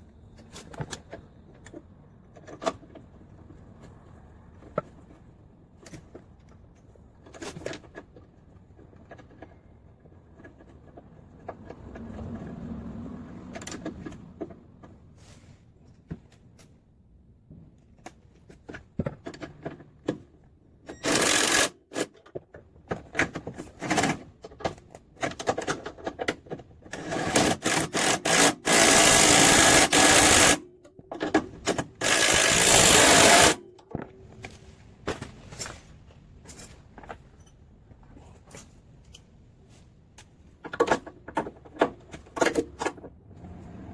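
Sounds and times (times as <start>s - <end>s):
tool clicks and handling knocks: 17.6s - 39.4s, 40.1s - 43.2s
power tool running: 21.0s - 21.7s, 27.0s - 30.6s, 32.0s - 33.6s
rapid mechanical clicking: 21.0s - 22.1s, 26.9s - 30.6s, 31.6s - 33.6s.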